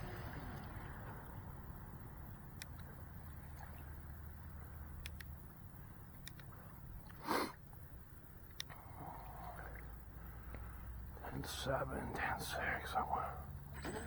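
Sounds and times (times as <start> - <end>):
faint low rumble: 0.0 - 13.8
person sniffing: 7.2 - 7.6.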